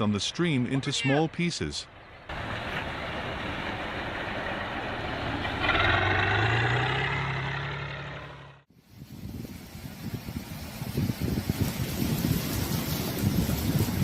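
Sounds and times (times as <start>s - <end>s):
diesel engine working under load: 2.1s - 8.7s.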